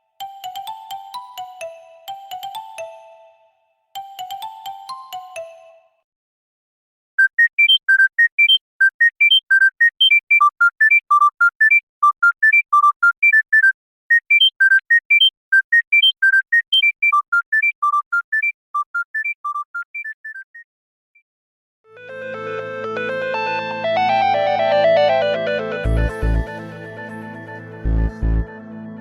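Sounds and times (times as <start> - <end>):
smartphone ringtone beeps: 7.2 - 20.7.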